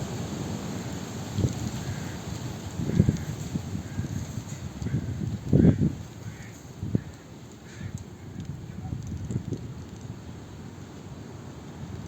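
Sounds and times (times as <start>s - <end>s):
wind buffeting microphone: 1.3s - 10.3s.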